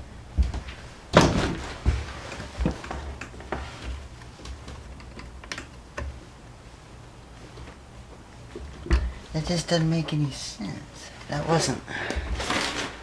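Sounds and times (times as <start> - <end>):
tools and parts knocking and clicking: 5.0 - 6.2.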